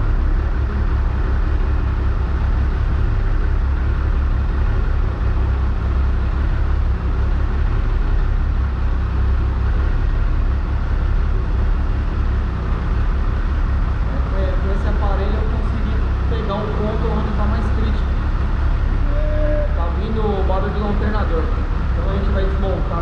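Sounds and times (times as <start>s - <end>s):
motorcycle engine idling: 0.0s - 23.0s.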